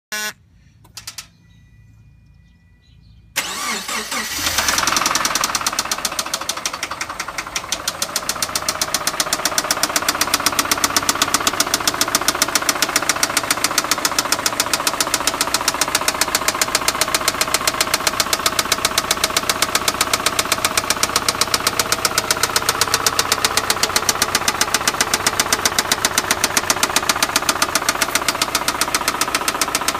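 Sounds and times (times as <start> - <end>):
car engine starting: 3.4 - 29.9
engine idling with ticking: 4.3 - 29.9.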